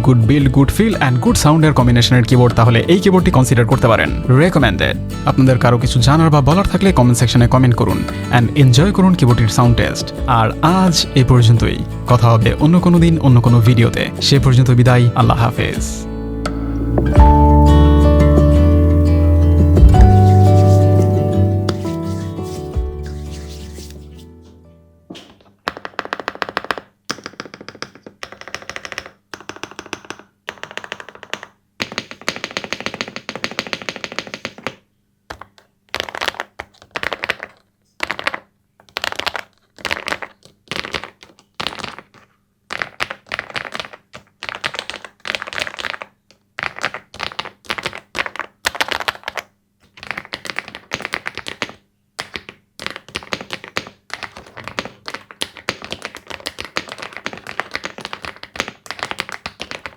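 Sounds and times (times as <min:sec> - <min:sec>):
mechanical keyboard typing: 0:25.7 - 0:34.8, 0:46.6 - 0:59.9.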